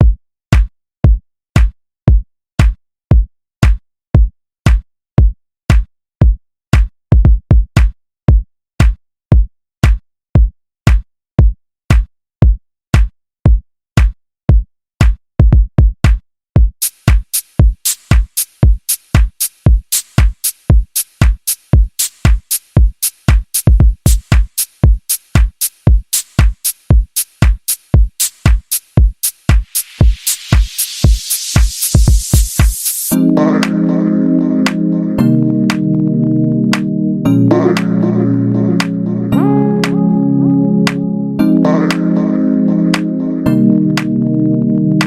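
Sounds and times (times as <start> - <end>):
drum machine kick: 0.0 - 32.9
crisp hi-hat: 16.8 - 33.1
electronic dance music: 16.9 - 44.3.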